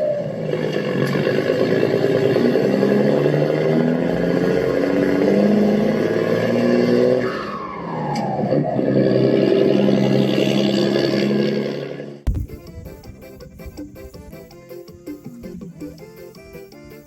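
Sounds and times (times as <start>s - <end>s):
background music with held notes: 12.3s - 17.0s.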